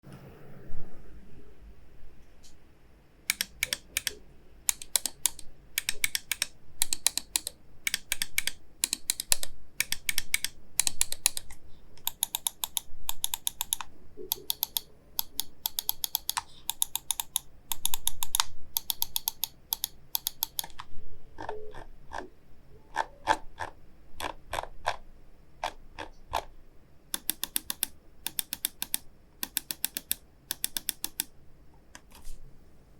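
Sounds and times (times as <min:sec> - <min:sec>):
mouse buttons clicking: 0:03.3 - 0:22.2, 0:27.1 - 0:31.3.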